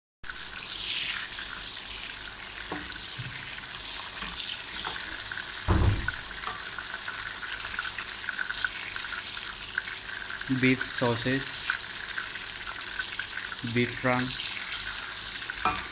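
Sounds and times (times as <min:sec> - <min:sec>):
sausages sizzling in a pan: 0:00.2 - 0:15.9
dull knock: 0:05.7 - 0:06.2.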